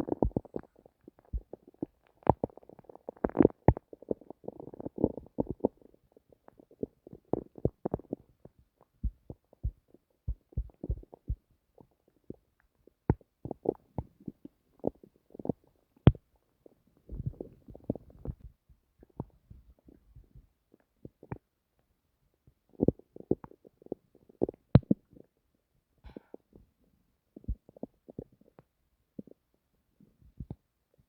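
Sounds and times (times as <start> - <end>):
stomach gurgling and rumbling: 0.0 - 31.0.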